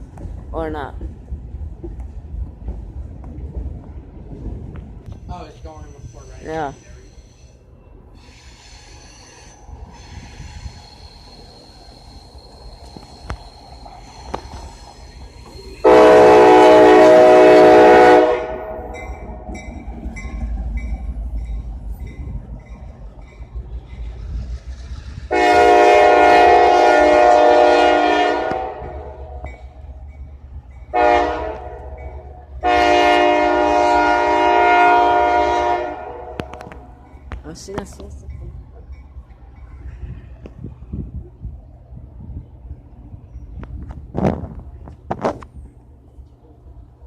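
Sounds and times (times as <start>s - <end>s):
low train rumble: 0.0s - 47.0s
locomotive air horn blasts: 15.8s - 19.5s, 25.3s - 29.6s, 30.9s - 36.8s.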